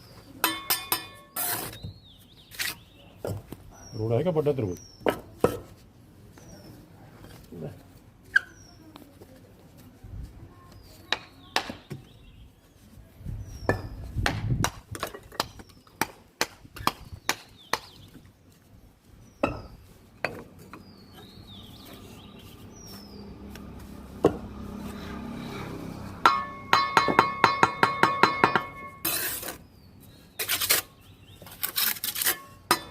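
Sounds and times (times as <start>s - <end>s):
hard objects clinking and knocking: 26.3s - 29.1s.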